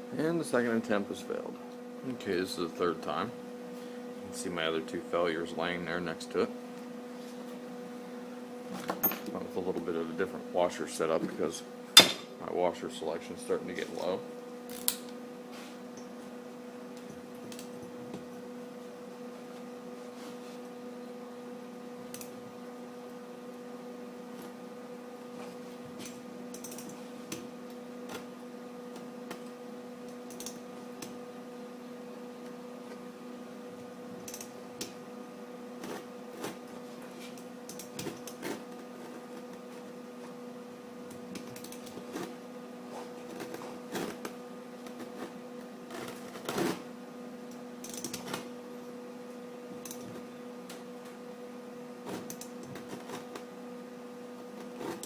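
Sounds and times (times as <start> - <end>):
welding clicks and crackles: 26.0 - 27.5, 30.1 - 31.2, 37.3 - 38.6, 41.1 - 42.4, 47.5 - 48.5.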